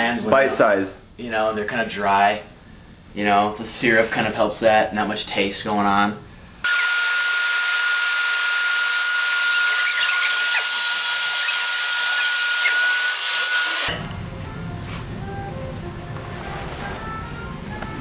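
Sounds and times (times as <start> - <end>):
small electric motor whirring: 6.6 - 13.9
quiet music: 13.9 - 18.0.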